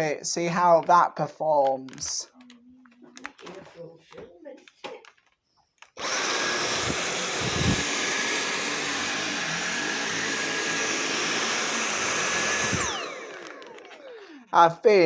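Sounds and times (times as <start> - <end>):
motor winding down: 6.0 - 14.2
vacuum cleaner running: 6.0 - 14.5.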